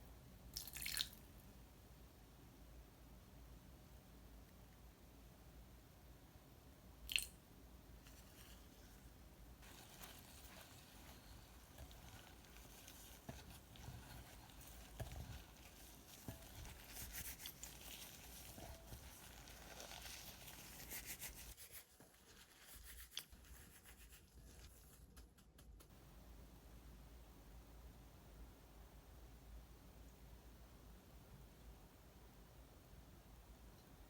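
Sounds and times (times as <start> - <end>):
slime rubbing and crackling: 9.6 - 23.4.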